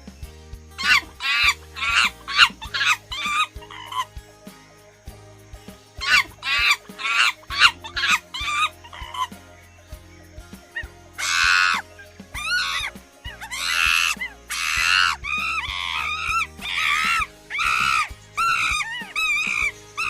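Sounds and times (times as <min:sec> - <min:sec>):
background music: 0:00.0 - 0:20.0
monkey screeching: 0:00.8 - 0:04.2, 0:06.0 - 0:09.4, 0:10.8 - 0:20.0.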